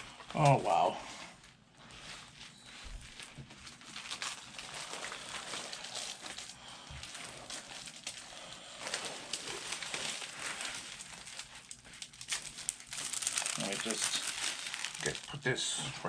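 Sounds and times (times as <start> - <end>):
paper and bag rustling: 0.0 - 15.5.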